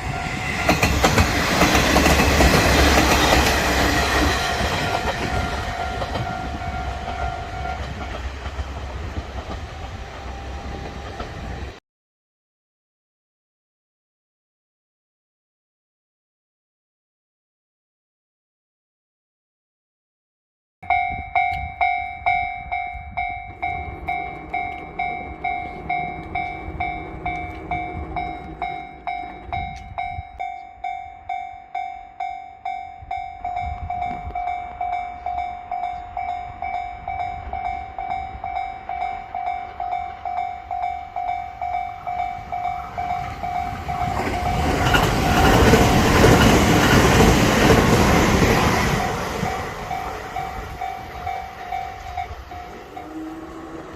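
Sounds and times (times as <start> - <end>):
level crossing warning bell: 0.0 - 9.2, 20.8 - 53.9
train rumble: 0.0 - 11.8, 20.9 - 53.9.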